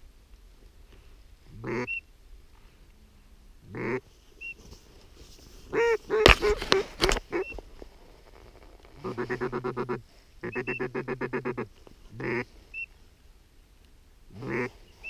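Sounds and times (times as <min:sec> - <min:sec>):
duck quacking: 0:01.5 - 0:02.0, 0:03.7 - 0:04.0, 0:05.7 - 0:07.6, 0:09.0 - 0:12.9, 0:14.3 - 0:14.8.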